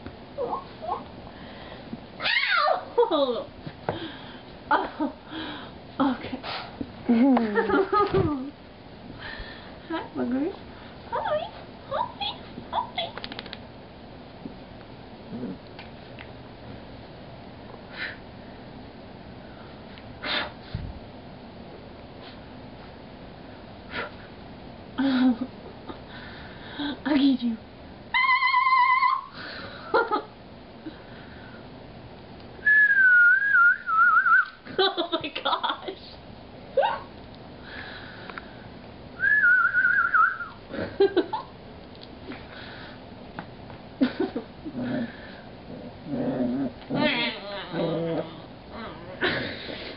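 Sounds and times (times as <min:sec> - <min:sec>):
dog whining: 0:28.1 - 0:29.3, 0:46.2 - 0:49.3.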